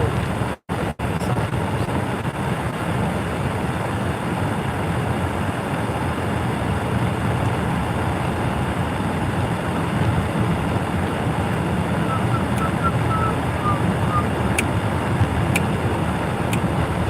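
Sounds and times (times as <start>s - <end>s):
vehicle road and engine rumble: 0.0s - 17.0s.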